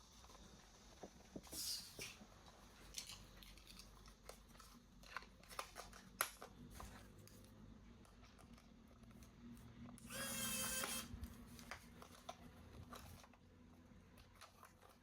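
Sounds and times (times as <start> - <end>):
plastic packaging rustling: 0.2 - 9.3.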